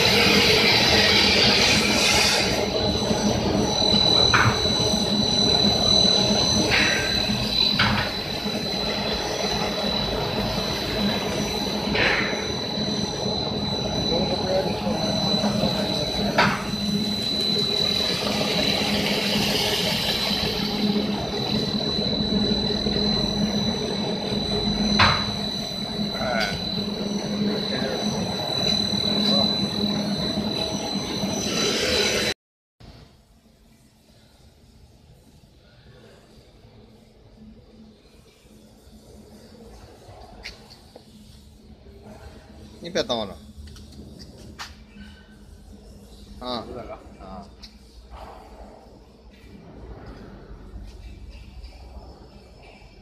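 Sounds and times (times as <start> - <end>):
sanding machine whine and rumble: 0.0 - 32.3.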